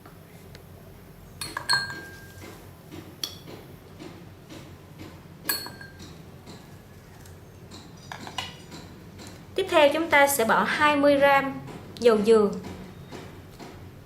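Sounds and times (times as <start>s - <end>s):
spoon clinking against container: 1.4s - 2.4s, 5.5s - 6.1s.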